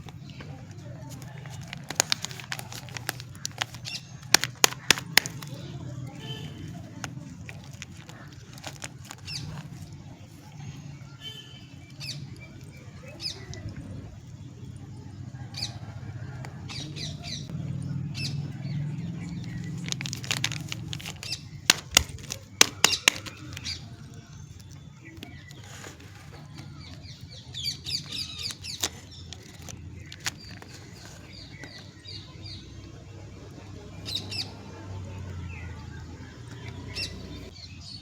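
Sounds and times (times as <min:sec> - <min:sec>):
wrappers rustling and crinkling: 0:00.0 - 0:10.5, 0:19.4 - 0:31.9
loud sharp crackles: 0:01.1 - 0:09.8, 0:19.4 - 0:23.9.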